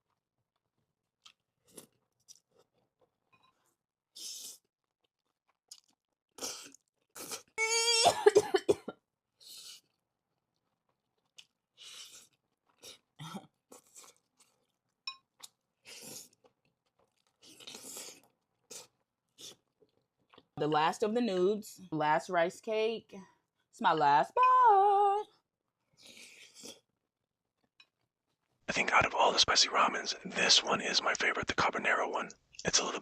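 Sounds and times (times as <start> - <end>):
person chewing: 1.2 - 7.6, 10.6 - 20.6, 26.0 - 27.0
person coughing: 8.0 - 8.9.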